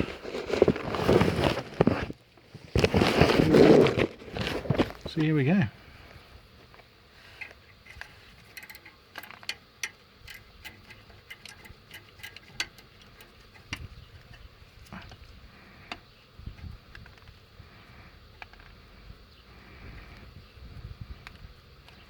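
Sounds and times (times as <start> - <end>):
hand tools clicking on bolts: 7.4 - 15.2.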